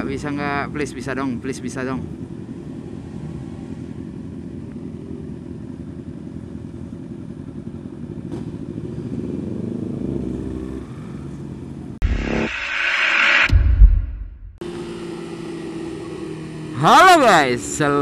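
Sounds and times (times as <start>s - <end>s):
motorcycle engine running: 4.0s - 11.9s
loud rushing noise: 12.0s - 14.6s.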